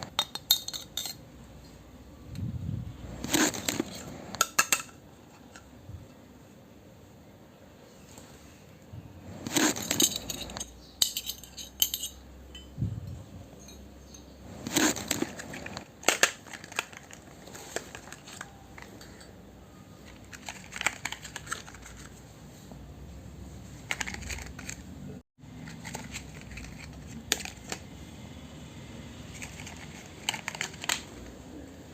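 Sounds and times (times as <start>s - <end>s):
toy kitchen pieces clicking and clinking: 0.0s - 1.2s, 3.3s - 5.7s, 9.5s - 12.2s, 14.7s - 19.4s, 20.0s - 22.1s, 23.9s - 24.8s, 25.5s - 27.8s, 29.3s - 31.3s.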